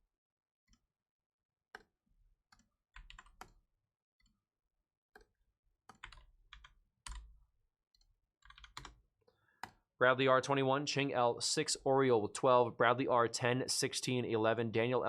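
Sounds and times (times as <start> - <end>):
keyboard typing: 2.5 - 3.6, 5.9 - 7.3, 8.4 - 9.0.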